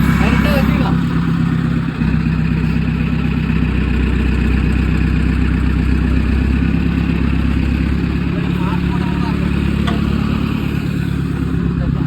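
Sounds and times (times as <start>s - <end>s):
chainsaw engine idling: 0.0s - 12.0s.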